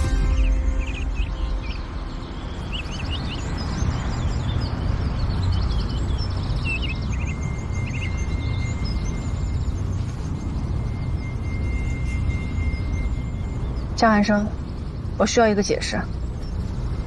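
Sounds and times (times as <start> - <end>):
birds chirping and trilling: 0.0 - 17.0
thin high tone: 7.2 - 15.0.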